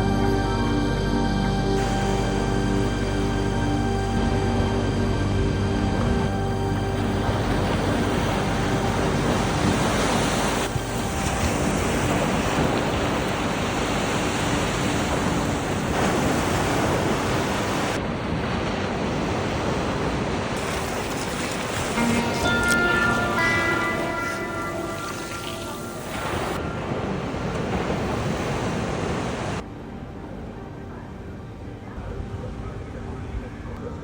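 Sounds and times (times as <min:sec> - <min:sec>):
waves washing onto shore: 0:06.0 - 0:29.6.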